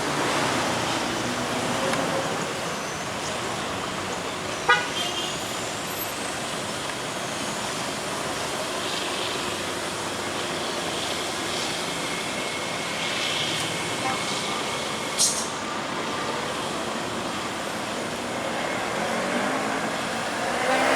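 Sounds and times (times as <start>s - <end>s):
truck engine and road noise: 0.0s - 20.9s
truck horn toot: 4.7s - 5.4s.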